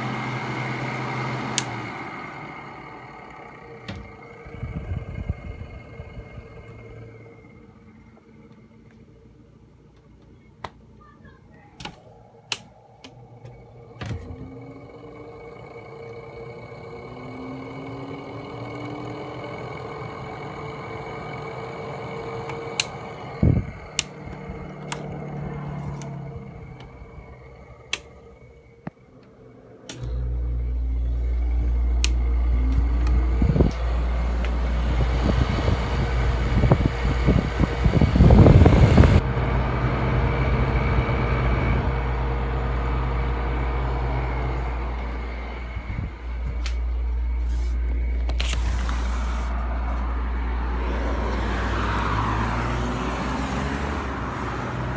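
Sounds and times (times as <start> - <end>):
air conditioner fan hum: 0.0 - 54.9
compressor deep hum: 0.0 - 54.9.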